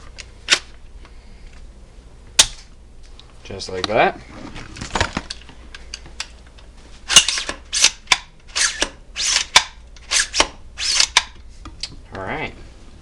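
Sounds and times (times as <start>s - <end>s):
rifle metallic slides and snaps: 7.1s - 11.3s.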